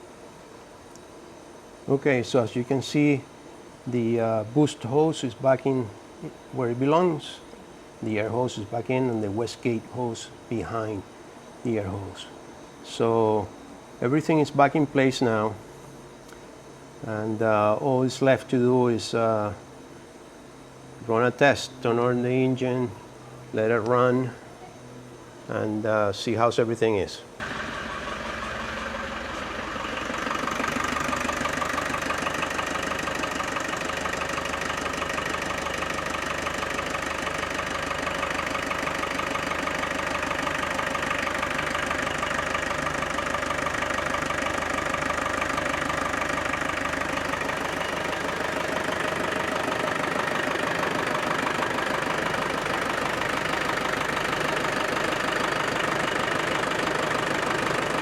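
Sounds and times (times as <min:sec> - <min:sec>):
diesel engine idling: 0:27.4 - 0:58.0.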